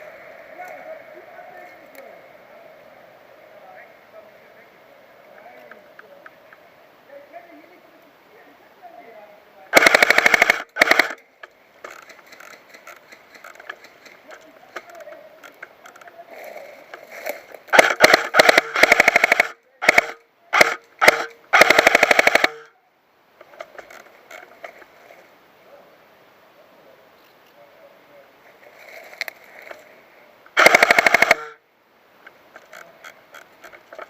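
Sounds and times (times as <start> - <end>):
electric gun firing rapid clicks: 9.8 - 11.2, 17.7 - 22.6, 30.6 - 31.6.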